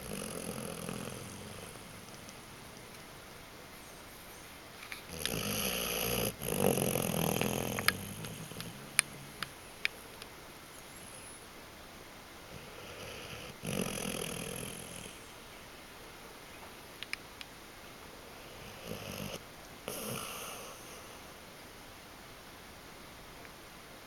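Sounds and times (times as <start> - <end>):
low rumbling snore: 0.0 - 2.8, 5.1 - 9.5, 12.5 - 15.3, 18.5 - 21.2
sleeper breathing hiss: 0.0 - 3.0, 3.7 - 11.5, 12.4 - 15.6, 18.2 - 21.6
sharp clicks: 17.0 - 17.5.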